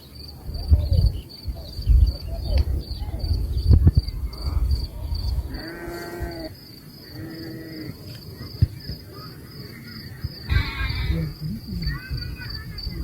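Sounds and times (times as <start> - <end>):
insects chirring: 0.0 - 13.0
cattle mooing: 5.5 - 6.5.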